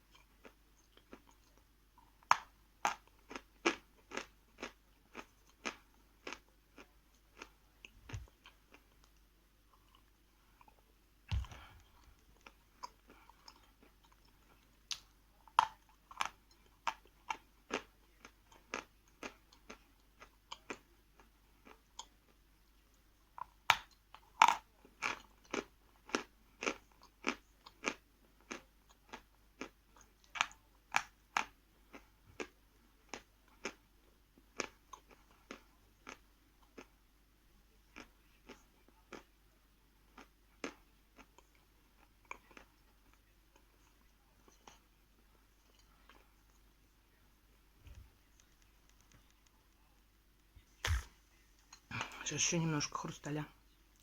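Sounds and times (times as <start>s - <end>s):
thump: 11.3s - 11.7s
person crunching chalk: 50.8s - 51.1s.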